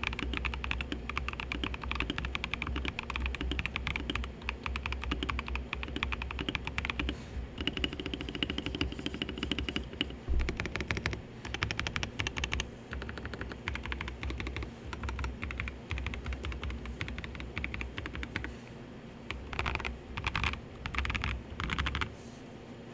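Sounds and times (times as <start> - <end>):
typing on mechanical keyboard: 0.0 - 18.5, 19.3 - 22.1
air conditioner hum: 0.0 - 22.9.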